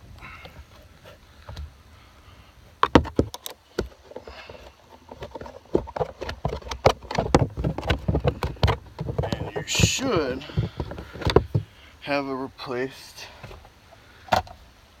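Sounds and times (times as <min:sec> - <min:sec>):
hand tools clicking and knocking: 0:02.8 - 0:11.7.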